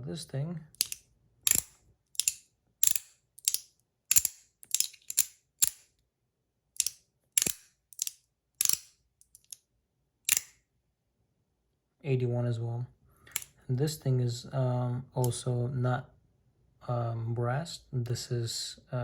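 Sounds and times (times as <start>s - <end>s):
metal fidget toy clicking: 0.7s - 5.9s, 6.8s - 9.6s, 10.3s - 10.5s.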